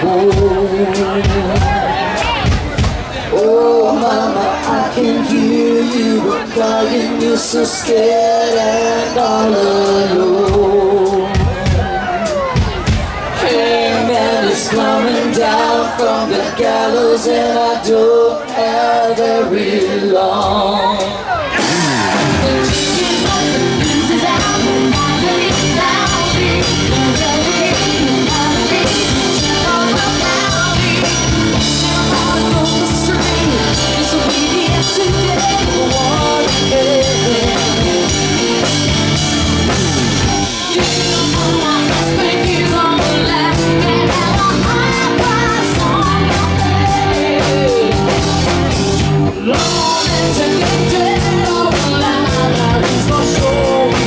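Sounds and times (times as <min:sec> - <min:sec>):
drum kit: 0:00.0 - 0:17.6, 0:18.5 - 0:54.0
electric guitar: 0:21.2 - 0:54.0.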